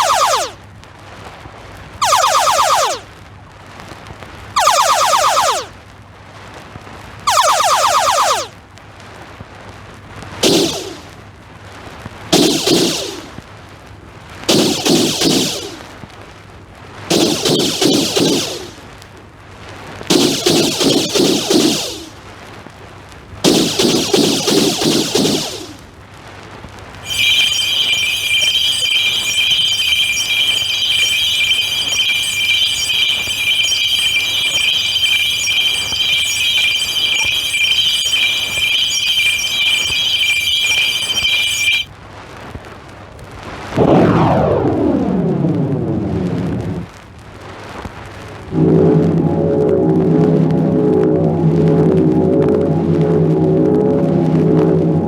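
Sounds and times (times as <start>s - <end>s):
high electronic buzzing tone: 0.0s - 0.6s, 2.0s - 3.1s, 4.6s - 5.8s, 7.3s - 8.5s, 10.4s - 11.2s, 12.3s - 13.4s, 14.5s - 15.9s, 17.1s - 18.8s, 20.1s - 22.2s, 23.4s - 25.8s, 27.1s - 41.9s, 48.5s - 55.0s
rattling electronic blasts: 0.0s - 0.6s, 2.0s - 3.1s, 4.6s - 5.8s, 7.3s - 8.6s, 10.4s - 11.2s, 12.3s - 13.4s, 14.5s - 16.0s, 17.1s - 18.9s, 20.1s - 22.2s, 23.4s - 25.9s, 27.1s - 41.9s, 48.5s - 55.0s.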